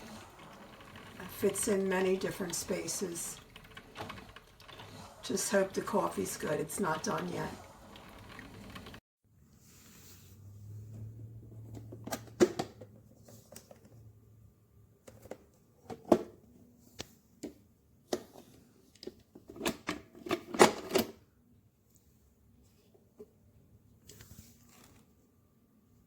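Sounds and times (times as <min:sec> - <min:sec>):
electric percolator perking: 0:00.0 - 0:09.0.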